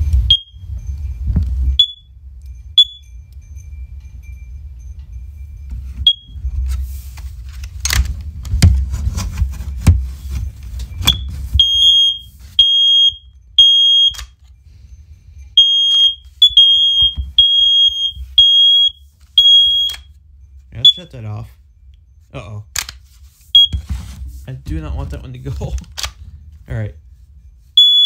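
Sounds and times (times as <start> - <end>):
smoke alarms beeping: 0.0 - 6.8, 10.2 - 22.7, 23.4 - 24.0, 27.3 - 28.0.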